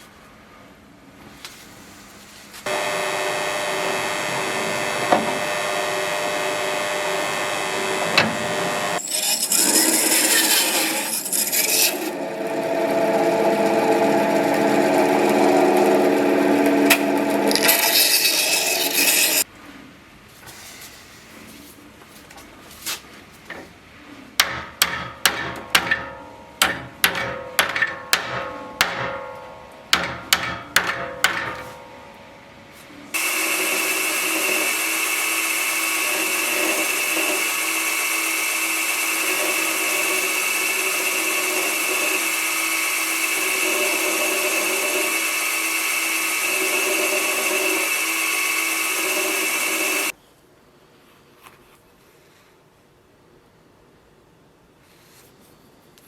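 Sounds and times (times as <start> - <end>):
electric power tool running: 2.7 - 19.4, 33.2 - 50.1.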